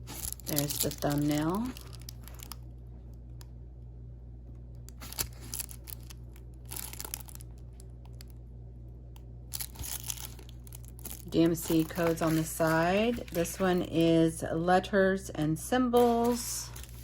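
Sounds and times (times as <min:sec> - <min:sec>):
plastic film crinkling: 0:00.0 - 0:02.7, 0:04.9 - 0:08.3, 0:09.5 - 0:14.0, 0:16.0 - 0:17.0
low hum: 0:00.0 - 0:17.0.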